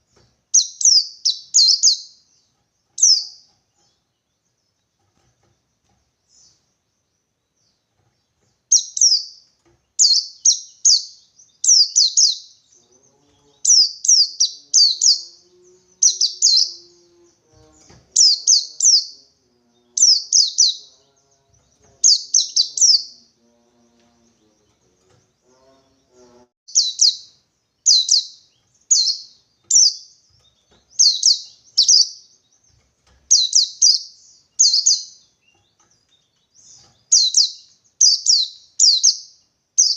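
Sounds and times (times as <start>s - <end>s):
bird high downward notes: 10.0s - 39.2s.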